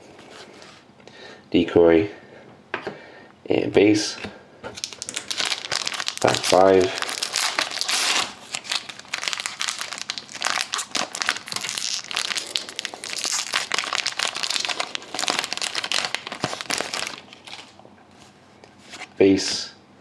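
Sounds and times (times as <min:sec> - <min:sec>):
wrapper torn and crinkled: 0:04.8 - 0:17.8.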